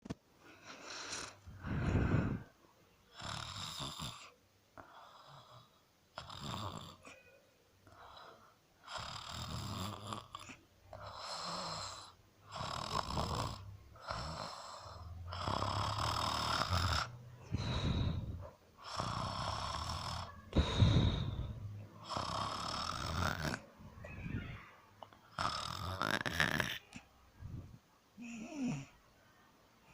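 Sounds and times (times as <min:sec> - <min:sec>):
rasping snores: 0:03.1 - 0:07.2, 0:08.8 - 0:23.7, 0:25.3 - 0:27.0, 0:28.2 - 0:29.0.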